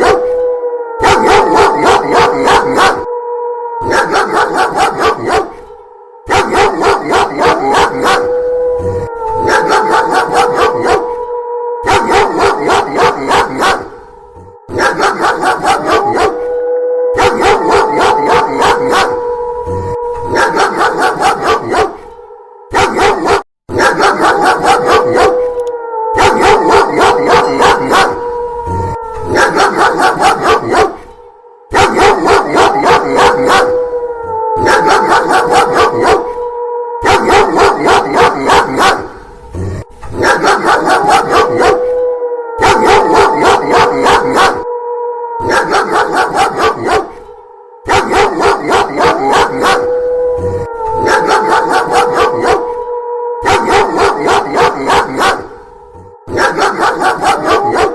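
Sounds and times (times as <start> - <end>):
dog barking loudly and fast: 0.0 - 0.4, 1.0 - 3.1, 3.8 - 8.4, 9.4 - 11.2, 11.8 - 14.0, 14.7 - 16.5, 17.1 - 19.3, 20.2 - 28.3, 29.3 - 33.8, 34.6 - 36.4, 37.0 - 39.4, 40.0 - 42.0, 42.6 - 44.7, 45.4 - 52.8, 53.4 - 57.9
long howl sliding down: 7.3 - 22.5, 48.0 - 57.9.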